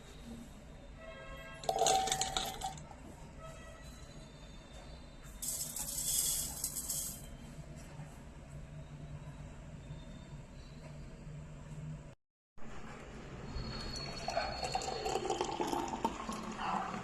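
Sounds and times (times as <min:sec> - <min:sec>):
grapes clattering into jar: 0:01.6 - 0:02.8
pouring hiss: 0:05.4 - 0:07.2.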